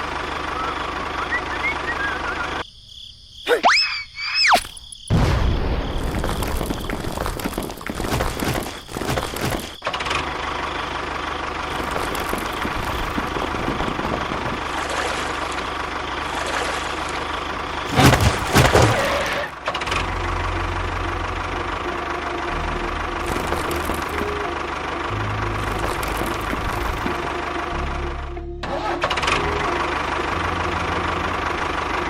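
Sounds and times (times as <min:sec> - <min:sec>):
motor humming: 0:10.2 - 0:28.0.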